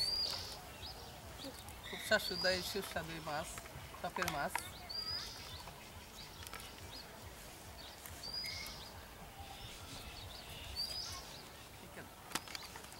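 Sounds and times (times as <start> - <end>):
faint bird chirps: 4.6 - 12.6.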